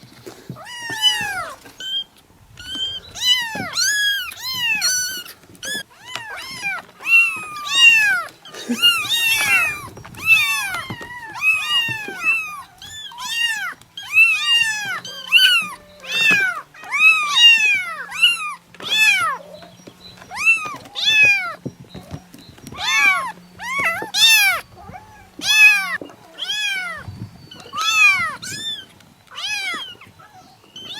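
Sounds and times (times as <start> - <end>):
kittens meowing: 0.4 - 30.9.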